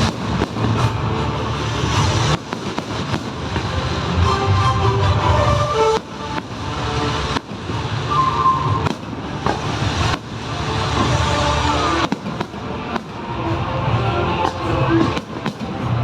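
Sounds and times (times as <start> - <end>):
sharp bangs: 0.0 - 1.0, 5.8 - 16.0
background music: 0.0 - 16.0
fireworks bursting and crackling: 0.0 - 16.0.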